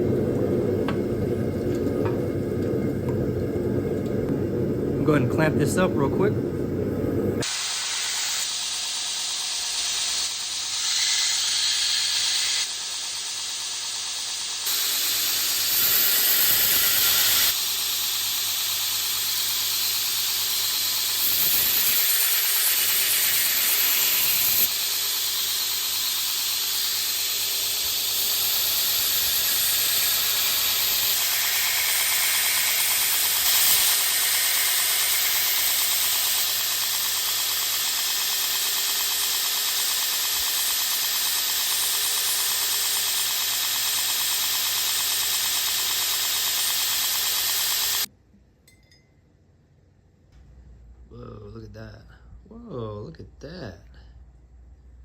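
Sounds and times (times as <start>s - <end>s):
loud hissing: 7.4s - 48.1s.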